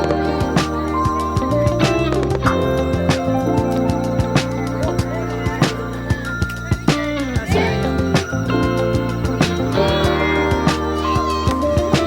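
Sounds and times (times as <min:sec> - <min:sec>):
sustained music chords: 0:00.0 - 0:12.0.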